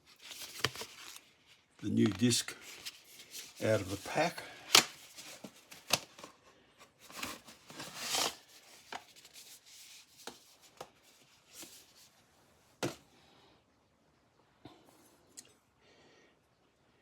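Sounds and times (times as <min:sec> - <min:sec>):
packaging rustling and tearing: 0:00.0 - 0:12.0.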